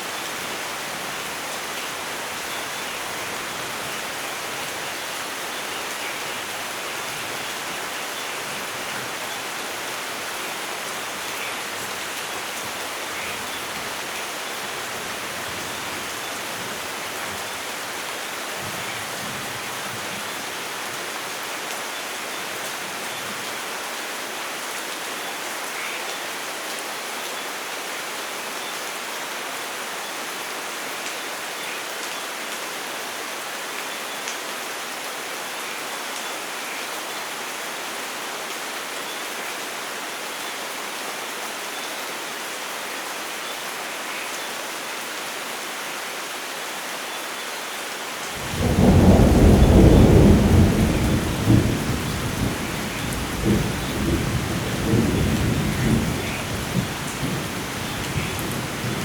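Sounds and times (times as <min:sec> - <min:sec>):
heavy rain hissing: 0:48.2 - 0:59.0
thunder clap and rumble: 0:48.4 - 0:59.0.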